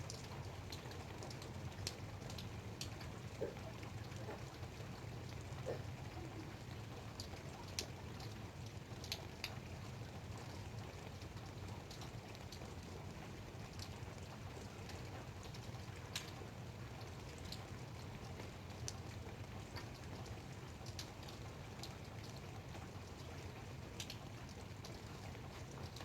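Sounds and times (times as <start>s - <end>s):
light rain falling: 0.0s - 26.0s.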